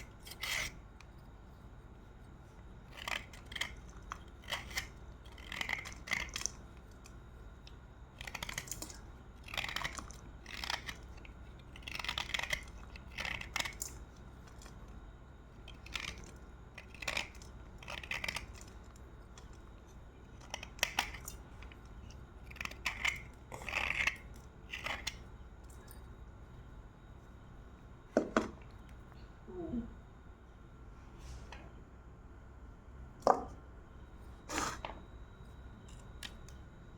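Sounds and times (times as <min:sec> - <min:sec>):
slate pencils being chewed: 0:00.0 - 0:26.0.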